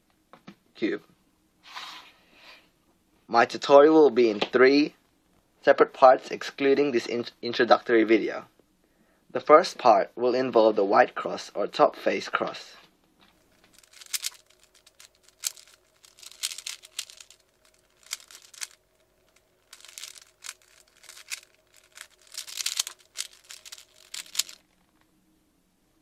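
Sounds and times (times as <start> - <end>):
faint steady hum: 0.0 - 26.0
puzzle cube plastic clicking: 13.6 - 24.6.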